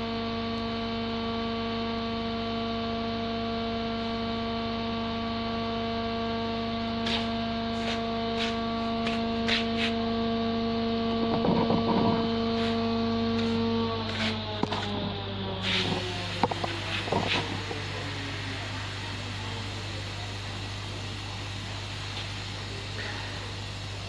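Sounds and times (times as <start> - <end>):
electric motor humming: 5.4 - 24.0.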